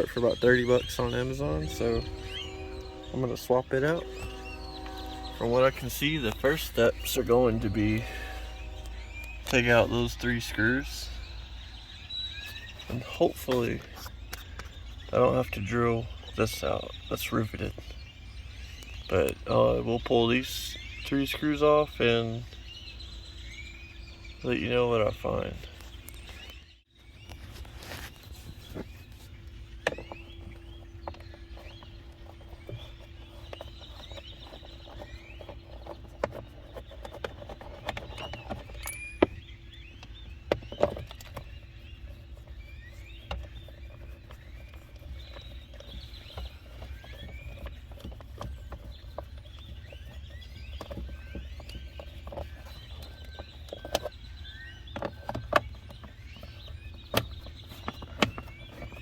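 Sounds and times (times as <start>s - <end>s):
steady low rumble: 0.0s - 15.4s
small birds chirping: 0.0s - 59.0s.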